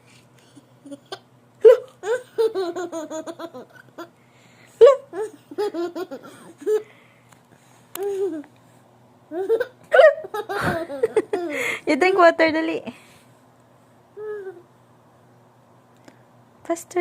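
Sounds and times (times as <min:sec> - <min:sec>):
child giggling: 0:00.8 - 0:04.1, 0:04.8 - 0:06.8, 0:08.0 - 0:08.5, 0:09.3 - 0:11.7
child hiccuping: 0:01.6 - 0:02.3.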